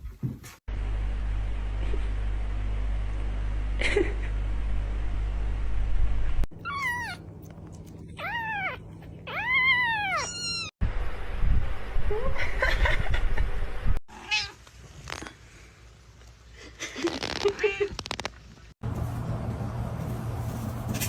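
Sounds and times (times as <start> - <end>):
cats meowing: 6.6 - 7.2, 8.1 - 10.7.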